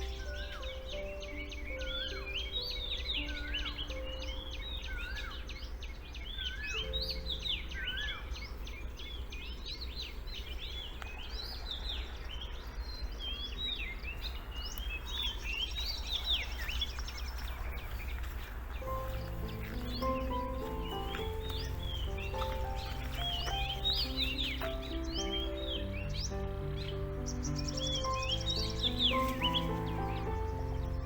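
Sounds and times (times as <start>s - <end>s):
songbirds chirping: 0.0s - 31.0s
steady low rumble: 17.3s - 31.0s.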